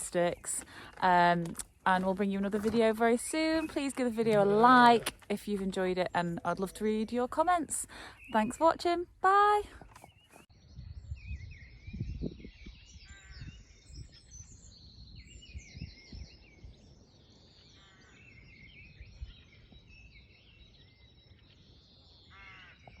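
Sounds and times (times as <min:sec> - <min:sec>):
songbirds singing and chirping: 0:00.0 - 0:23.0
wind gusts on microphone: 0:10.6 - 0:17.1.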